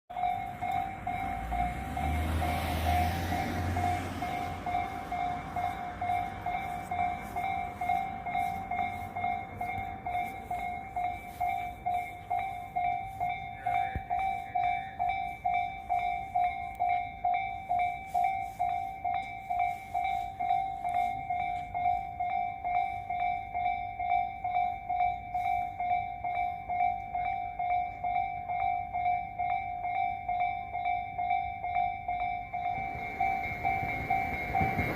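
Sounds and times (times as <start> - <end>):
level crossing warning bell: 0.1 - 34.9
passing train rumble: 0.1 - 34.9.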